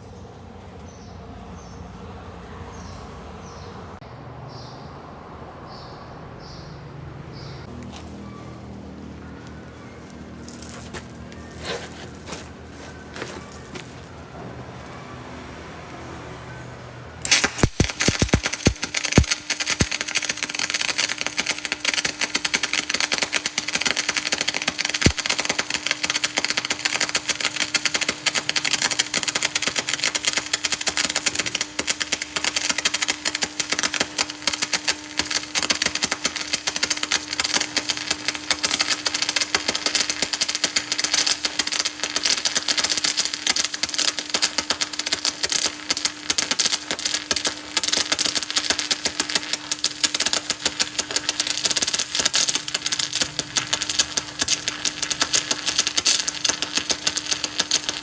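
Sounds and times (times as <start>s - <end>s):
arc welding crackle: 9.4s - 14.2s, 17.2s - 58.0s
steady hum: 17.2s - 58.0s.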